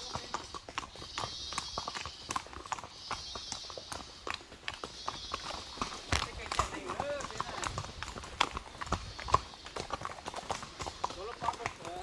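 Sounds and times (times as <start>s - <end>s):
horse hooves clopping on trail: 0.0s - 12.0s.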